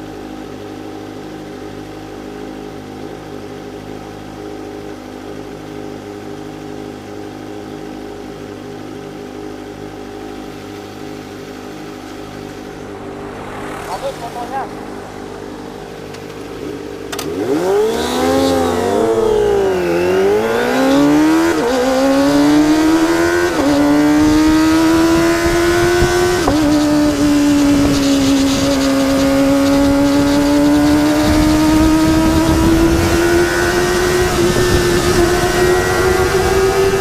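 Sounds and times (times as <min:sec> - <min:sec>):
motorcycle accelerating through gears: 0:00.0 - 0:37.0
motorcycle engine revving: 0:09.0 - 0:37.0.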